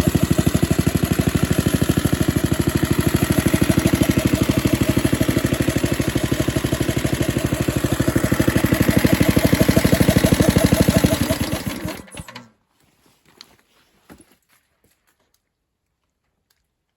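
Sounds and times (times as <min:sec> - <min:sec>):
engine air compressor chugging: 0:00.0 - 0:12.5.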